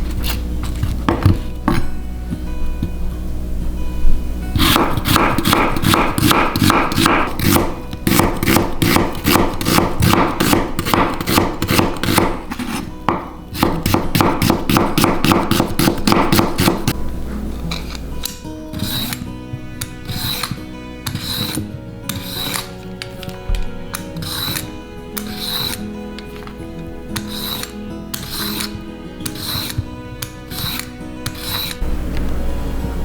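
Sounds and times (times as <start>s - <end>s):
background music: 0.0s - 33.0s
knife chopping on cutting board: 0.2s - 1.9s, 4.6s - 17.0s, 18.7s - 25.8s, 27.2s - 29.9s, 30.6s - 31.8s.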